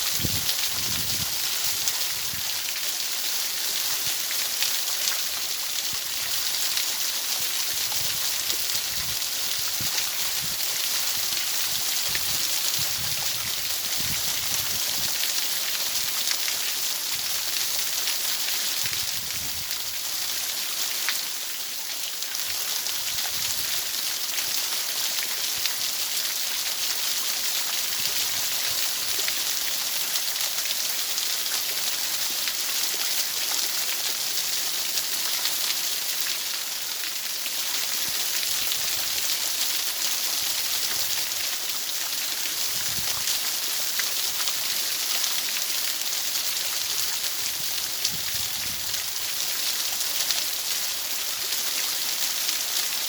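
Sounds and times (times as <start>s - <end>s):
steady rain hiss: 0.0s - 53.0s.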